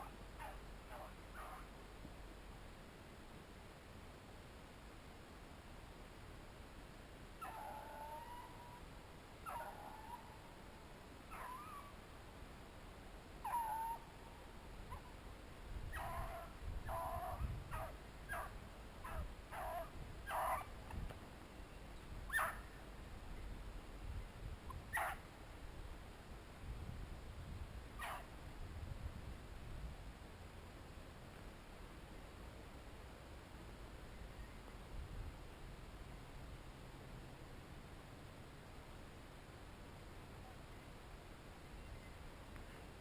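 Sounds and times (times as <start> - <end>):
dogs yelping: 0.4 - 1.6, 7.4 - 8.6, 9.5 - 10.2, 11.3 - 11.9, 13.4 - 14.0, 15.9 - 20.7, 22.3 - 22.6, 24.9 - 25.2, 28.0 - 28.2.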